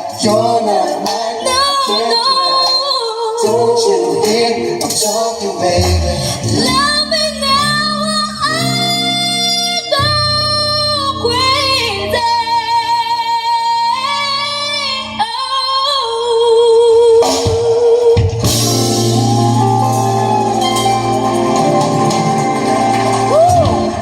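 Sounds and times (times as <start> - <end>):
band with bass: 0.0 - 24.0.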